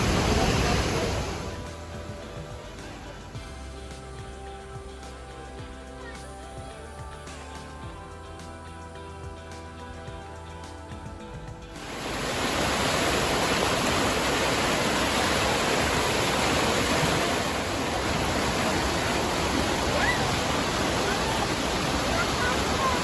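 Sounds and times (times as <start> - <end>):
waterfall rushing: 0.0 - 2.0, 11.8 - 23.0
music: 0.0 - 23.0.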